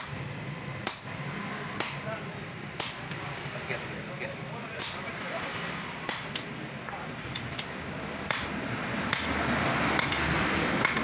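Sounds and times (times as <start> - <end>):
hammer striking chisel on metal: 0.0 - 3.3, 4.8 - 5.2, 6.1 - 6.6, 8.3 - 11.0
steady background noise: 0.0 - 11.0.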